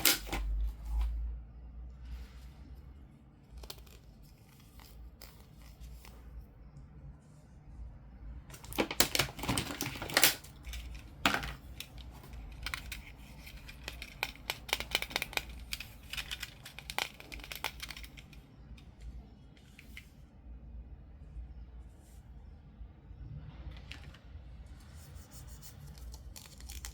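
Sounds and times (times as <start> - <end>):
plastic packaging clicks and crinkles: 8.5 - 18.8, 25.9 - 26.9.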